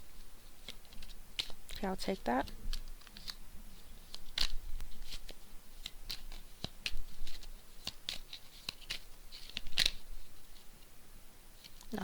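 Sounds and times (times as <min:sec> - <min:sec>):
cards being shuffled: 0:00.4 - 0:10.7, 0:11.6 - 0:12.0.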